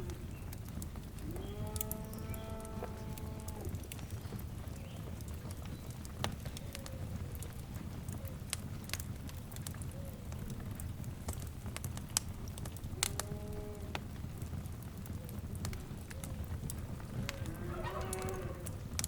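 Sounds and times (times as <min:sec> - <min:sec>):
fire crackling and popping: 0:00.0 - 0:19.0
drawn-out animal calls: 0:17.0 - 0:18.9.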